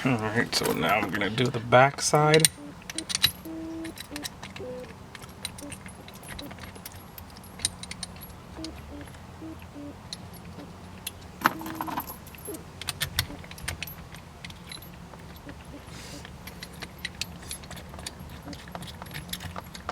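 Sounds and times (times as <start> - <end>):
metal bolts and washers clinking: 0.0 - 8.8, 10.1 - 19.9.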